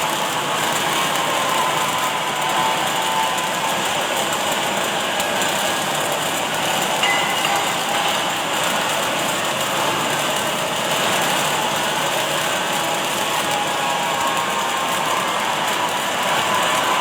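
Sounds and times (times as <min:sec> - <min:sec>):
welding machine hissing: 0:00.0 - 0:17.0.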